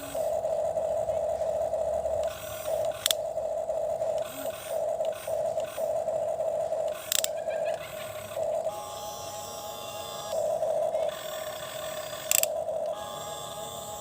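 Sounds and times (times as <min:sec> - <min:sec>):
small electric motor whining: 0:00.0 - 0:14.0
sharp plastic clicks: 0:02.1 - 0:08.7, 0:10.8 - 0:13.3.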